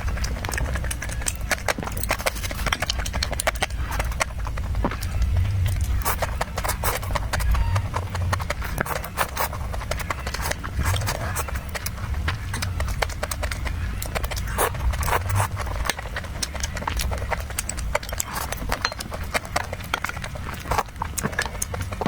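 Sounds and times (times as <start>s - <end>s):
low rumble: 0.0s - 8.8s
chewing and mouth smacks: 0.0s - 22.0s.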